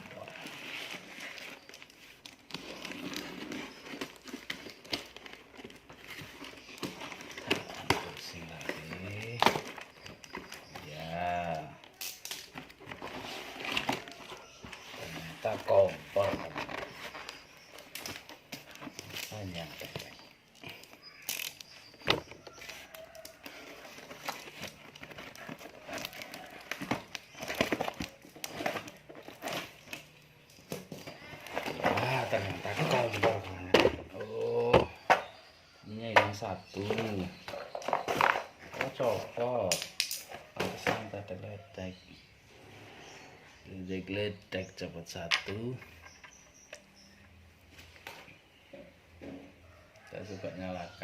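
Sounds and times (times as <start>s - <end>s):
packing material crinkling: 0.0s - 33.7s.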